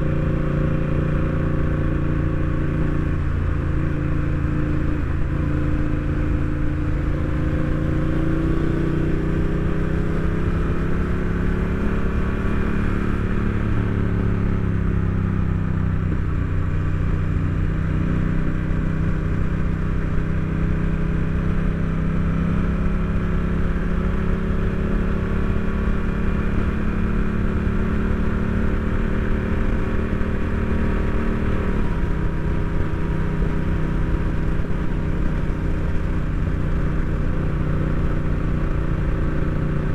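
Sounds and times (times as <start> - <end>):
motorcycle engine: 0.0 - 39.9.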